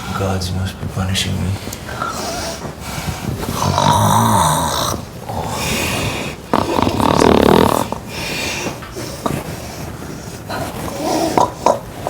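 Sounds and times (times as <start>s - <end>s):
quiet breathing: 1.4s - 12.0s
woman snoring loudly: 3.5s - 8.5s.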